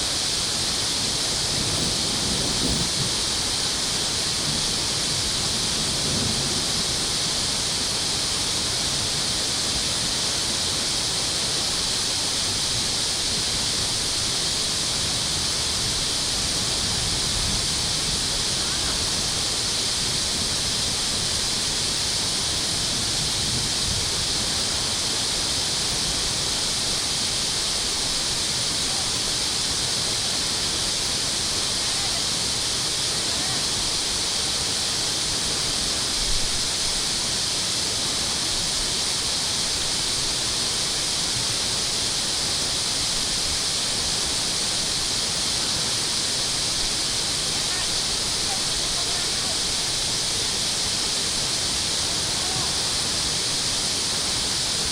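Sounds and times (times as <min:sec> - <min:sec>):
water rushing: 0:00.0 - 0:54.9.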